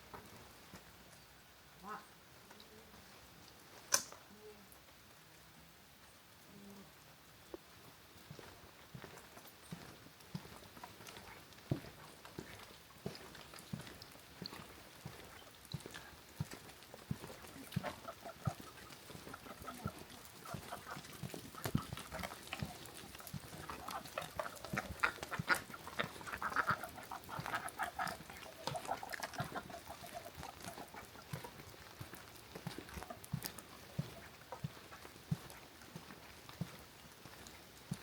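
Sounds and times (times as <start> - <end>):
footsteps walking: 7.5 - 38.0
chickens clucking: 17.2 - 32.0.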